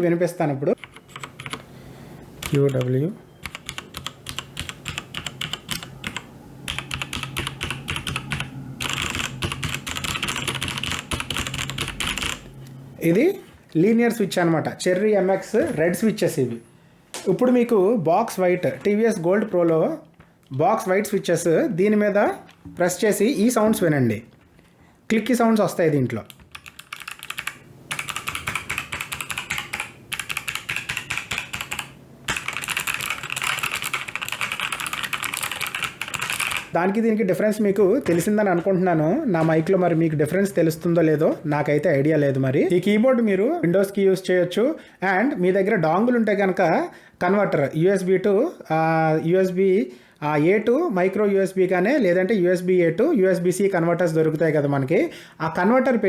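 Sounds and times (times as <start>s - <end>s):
typing on mechanical keyboard: 0.8s - 1.6s, 2.4s - 12.5s, 26.3s - 36.7s.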